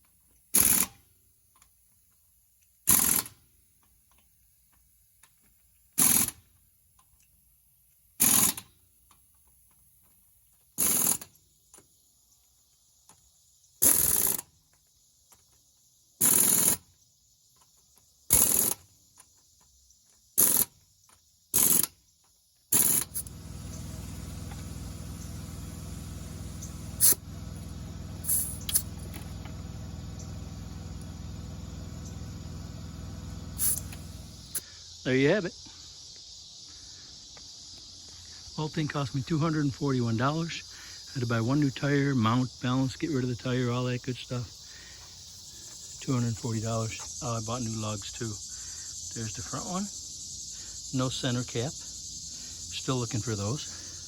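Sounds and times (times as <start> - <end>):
power tool bursts: 0.5 - 1.0, 2.8 - 3.4, 6.0 - 6.4, 8.2 - 8.7, 10.8 - 11.3, 13.8 - 14.5, 16.2 - 16.9, 18.3 - 18.9, 20.4 - 20.8, 21.5 - 22.0, 22.7 - 34.7.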